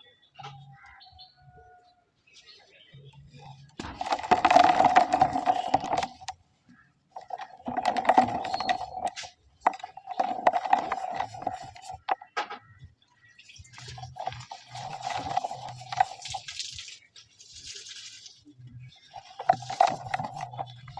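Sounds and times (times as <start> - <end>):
cement balls crunching: 3.5 - 6.4, 7.1 - 12.7, 13.6 - 20.9.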